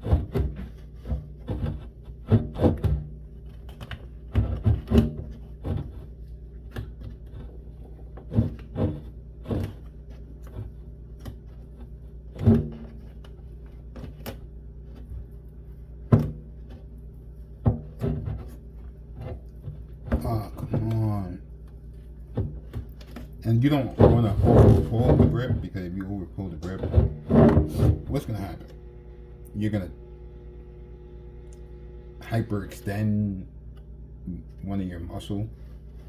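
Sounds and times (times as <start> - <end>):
board knocking: 23.9 - 25.7.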